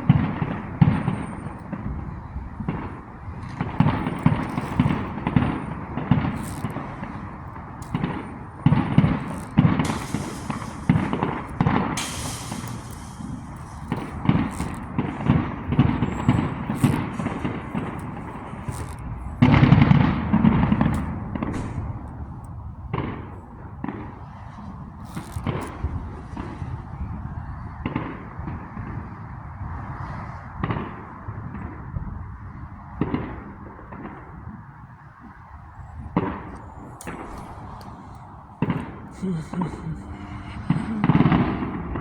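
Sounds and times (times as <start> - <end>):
fireworks booms and bangs: 0.0 - 18.7
fireworks crackling: 0.0 - 26.9, 35.2 - 42.0.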